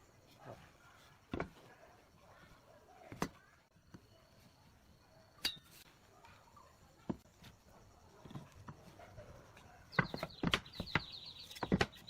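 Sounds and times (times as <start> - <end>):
knocks of wood and tools: 1.3 - 1.6, 9.9 - 12.0.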